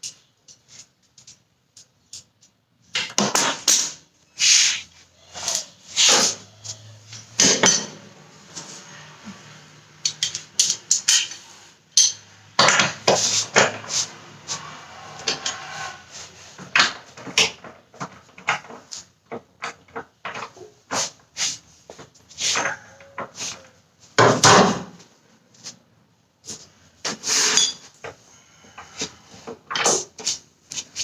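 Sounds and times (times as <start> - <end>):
metal parts clinking and clanking: 7.0 - 8.1, 10.0 - 13.9, 27.4 - 28.1.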